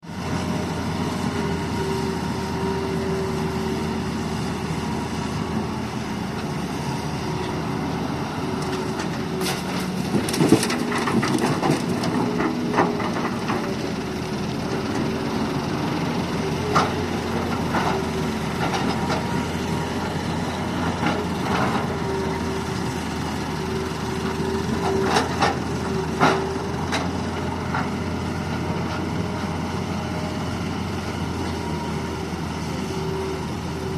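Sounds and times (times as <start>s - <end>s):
excavator diesel engine running: 0.0s - 33.9s
soil knocks and clatters: 8.6s - 13.7s.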